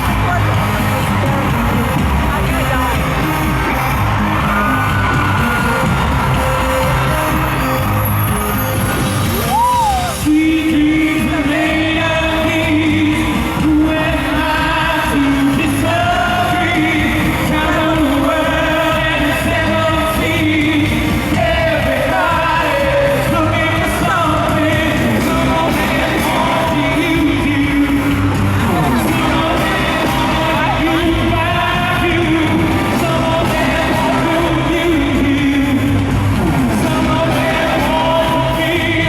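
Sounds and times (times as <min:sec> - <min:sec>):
audience shouting and singing along: 0:00.0 - 0:39.0
live pop band with male vocal: 0:00.0 - 0:39.0.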